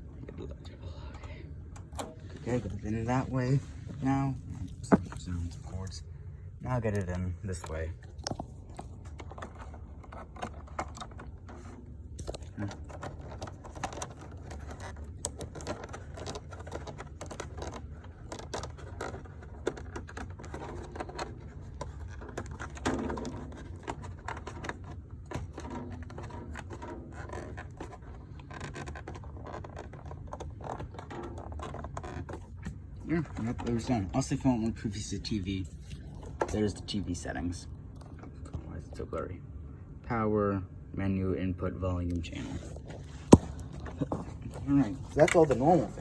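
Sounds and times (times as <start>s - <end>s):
steady low hum: 0.0s - 46.0s
clicks taps and scrapes: 0.2s - 5.9s, 6.8s - 34.8s.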